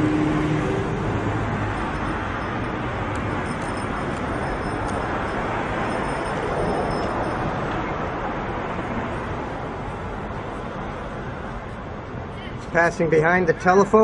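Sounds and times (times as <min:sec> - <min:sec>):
rushing road traffic: 0:00.0 - 0:14.0.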